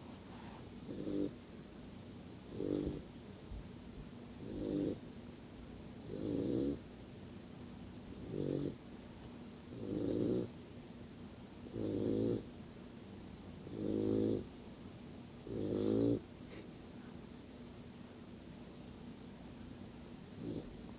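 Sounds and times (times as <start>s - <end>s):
puppy snoring: 0.0s - 1.4s, 2.4s - 3.2s, 4.4s - 5.2s, 6.0s - 6.9s, 8.2s - 8.8s, 9.7s - 10.6s, 11.6s - 12.6s, 13.6s - 14.6s, 15.4s - 16.6s, 20.3s - 20.9s.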